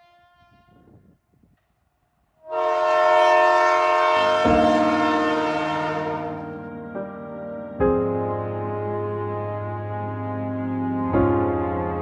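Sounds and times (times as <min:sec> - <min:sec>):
train horn blast: 0:00.0 - 0:01.0, 0:02.4 - 0:06.6.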